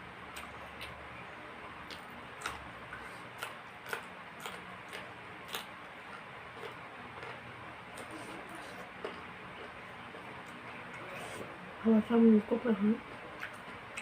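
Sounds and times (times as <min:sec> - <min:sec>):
faint low hum: 0:00.0 - 0:14.0
person chewing with wet smacks: 0:00.3 - 0:01.0, 0:01.8 - 0:11.5, 0:13.2 - 0:14.0.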